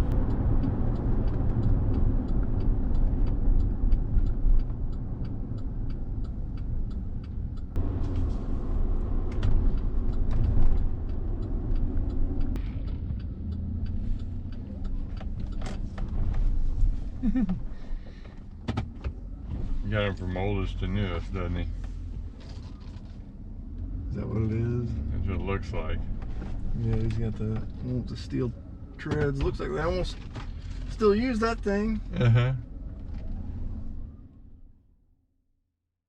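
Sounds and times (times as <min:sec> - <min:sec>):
engine and road rumble in car: 0:00.0 - 0:34.9
faint regular ticking: 0:00.1 - 0:08.1, 0:08.7 - 0:18.6.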